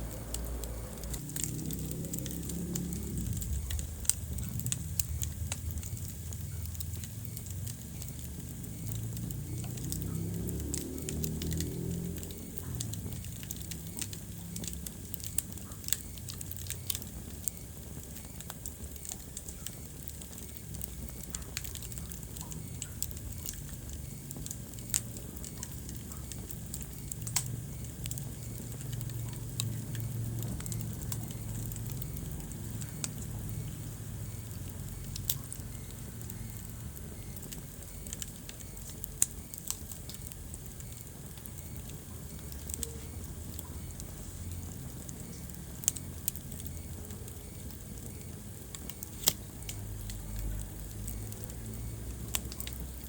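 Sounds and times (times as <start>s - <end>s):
low rumble: 0.0s - 14.7s
wood fire crackling: 0.0s - 53.0s.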